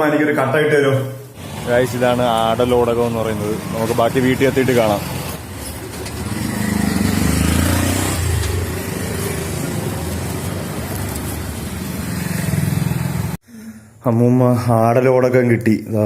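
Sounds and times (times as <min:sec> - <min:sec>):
road noise: 0:01.3 - 0:13.4
vehicle engine running: 0:01.4 - 0:13.4.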